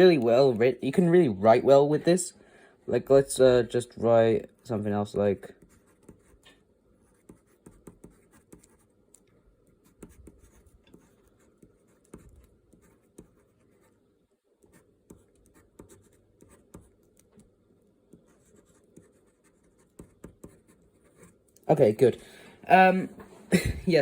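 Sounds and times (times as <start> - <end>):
pen scratching on paper: 5.5 - 14.0, 14.6 - 17.4, 18.1 - 21.5.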